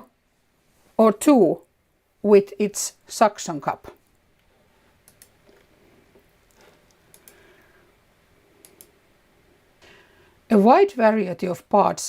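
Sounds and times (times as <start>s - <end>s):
faint short clicks: 6.9s - 7.4s, 8.6s - 9.0s.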